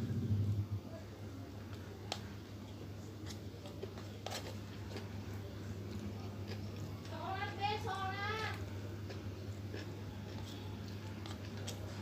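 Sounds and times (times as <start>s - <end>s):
steady low hum: 0.0s - 12.0s
chewing crunches and clicks: 1.7s - 7.2s, 8.5s - 12.0s.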